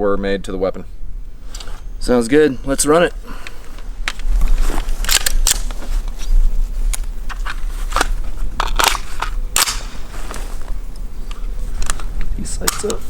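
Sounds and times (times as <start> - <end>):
low wind rumble on microphone: 0.8 - 12.6
handling clicks and crunches: 2.7 - 13.0.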